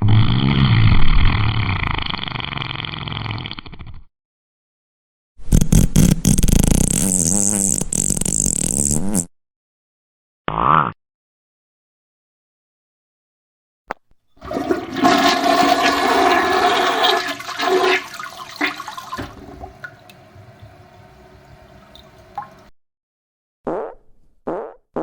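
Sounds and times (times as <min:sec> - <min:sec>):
toilet flushing water rush: 0:14.4 - 0:22.7.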